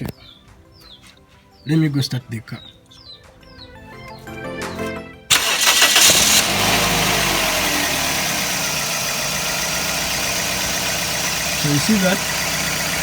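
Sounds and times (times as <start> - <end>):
car engine starting and idling: 5.3 - 13.0.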